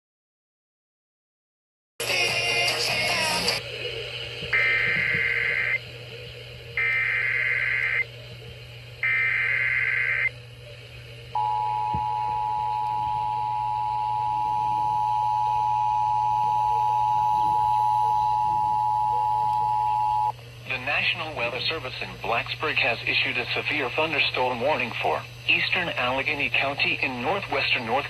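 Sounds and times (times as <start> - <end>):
digital data tone bursts: 4.5 - 5.8, 6.8 - 8.1, 9.0 - 10.3.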